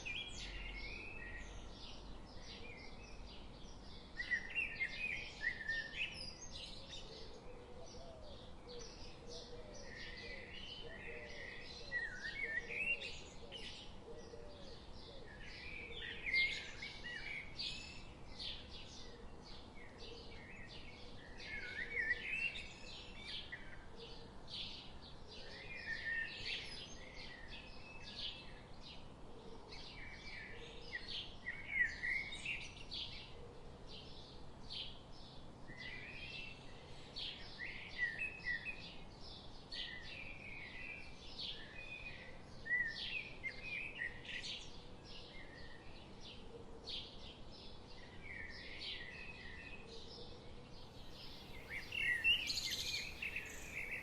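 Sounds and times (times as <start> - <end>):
songbirds chirping and singing: 0.0 - 46.4, 47.0 - 54.0.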